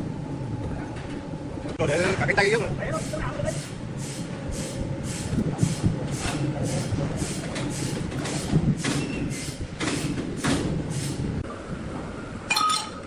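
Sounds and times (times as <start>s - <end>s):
sharp metallic clang: 12.5s - 13.0s.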